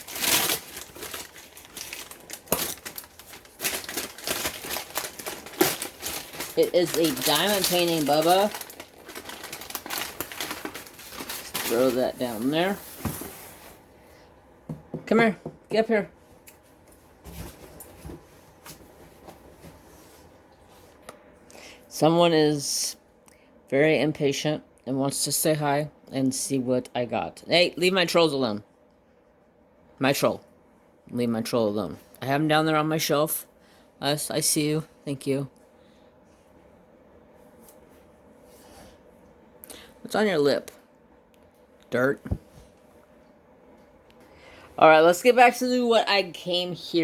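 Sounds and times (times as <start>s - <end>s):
packaging crinkling and rustling: 0.0s - 13.6s.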